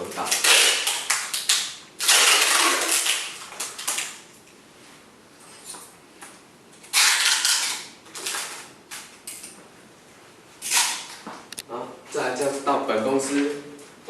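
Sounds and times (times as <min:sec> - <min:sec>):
adhesive tape ripping off roll: 0:00.0 - 0:04.2, 0:06.8 - 0:09.4, 0:10.6 - 0:11.2.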